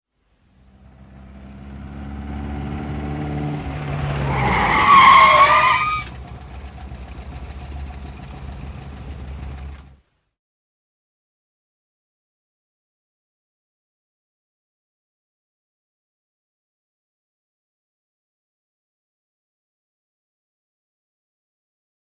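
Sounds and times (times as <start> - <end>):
car engine: 0.4 - 10.0
loud wavering brake squeal: 4.2 - 6.2.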